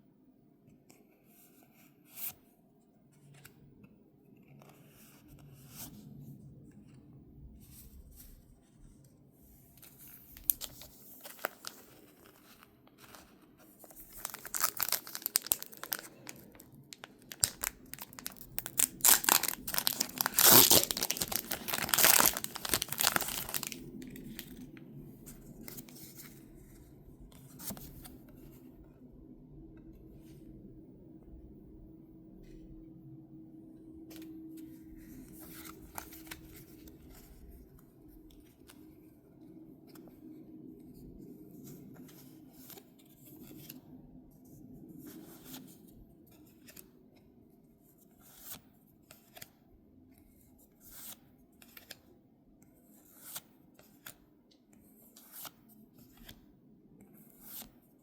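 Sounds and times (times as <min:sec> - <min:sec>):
packaging crinkling and tearing: 0:10.4 - 0:12.0, 0:13.8 - 0:24.7.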